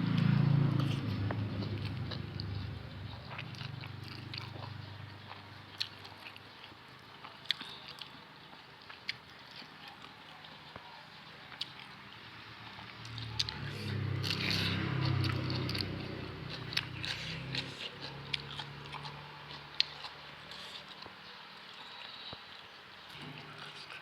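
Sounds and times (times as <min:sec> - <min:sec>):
person chewing and biting: 0:00.8 - 0:06.4, 0:13.0 - 0:21.0.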